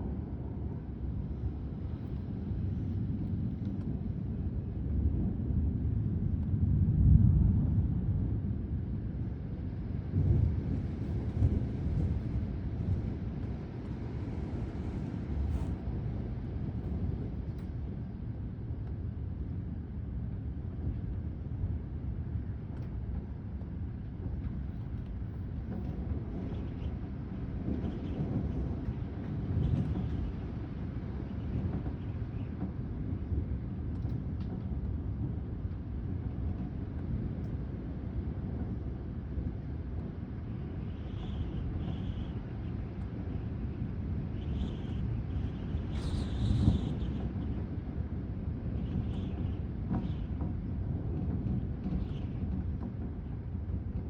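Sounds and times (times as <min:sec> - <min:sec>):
wind gusting across microphone: 0:00.0 - 0:54.0
thunder rumbling: 0:03.0 - 0:17.4.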